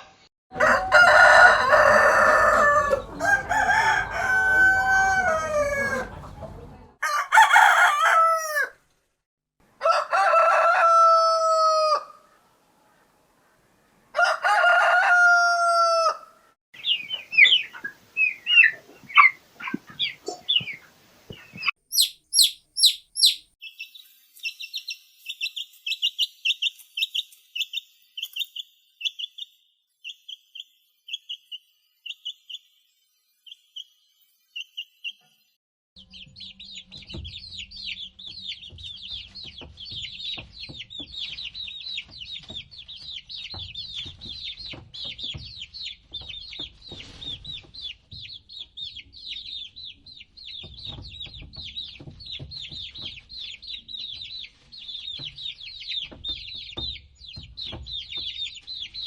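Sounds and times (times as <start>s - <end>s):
rooster crowing: 0.5s - 6.3s, 7.0s - 8.8s, 9.8s - 12.2s, 14.1s - 16.5s
bird chirping rapidly: 21.5s - 24.0s.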